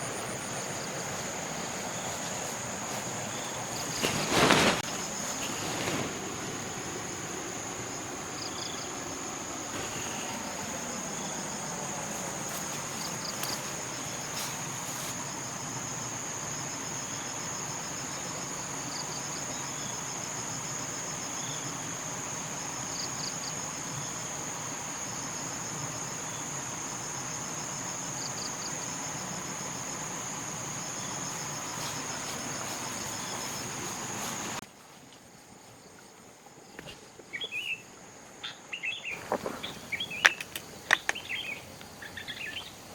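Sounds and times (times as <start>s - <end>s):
insects buzzing: 0.0s - 42.9s
pulsed insect chirps: 1.7s - 15.0s, 37.3s - 42.9s
faint bird chirps: 37.3s - 40.4s.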